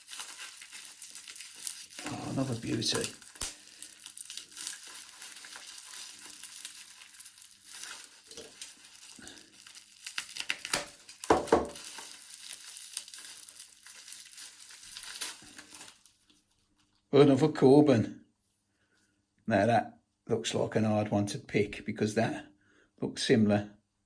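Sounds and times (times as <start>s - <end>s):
packaging crinkling: 0.0s - 17.1s.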